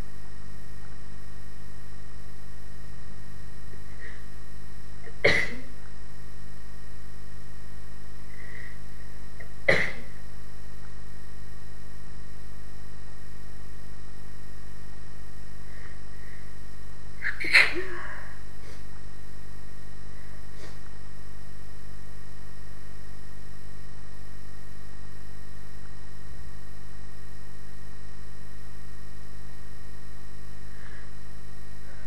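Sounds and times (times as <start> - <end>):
steady background hum: 0.0 - 32.0
person sneezing: 5.1 - 5.7, 9.7 - 10.1, 17.2 - 18.9, 20.5 - 20.9.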